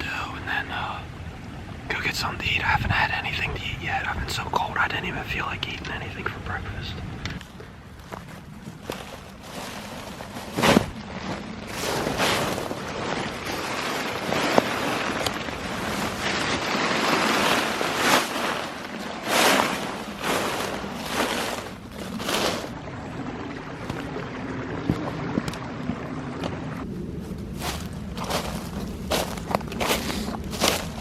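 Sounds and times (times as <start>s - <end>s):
footsteps in dry leaves: 7.5s - 22.8s, 27.2s - 31.0s.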